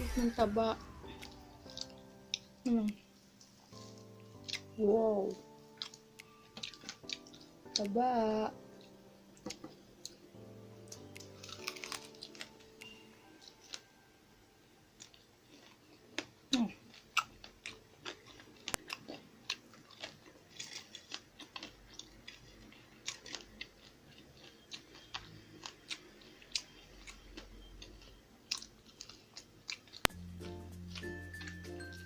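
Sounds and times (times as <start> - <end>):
background music: 0.0 - 15.2, 30.1 - 32.0
person chewing food: 1.0 - 7.9, 8.6 - 14.0, 14.9 - 32.0.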